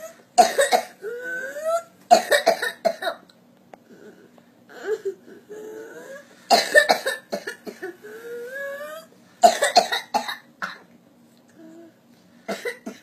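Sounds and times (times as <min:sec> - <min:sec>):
rapid harsh coughs: 0:00.4 - 0:01.0, 0:02.1 - 0:03.2, 0:06.5 - 0:08.0, 0:09.4 - 0:10.9, 0:12.5 - 0:13.0.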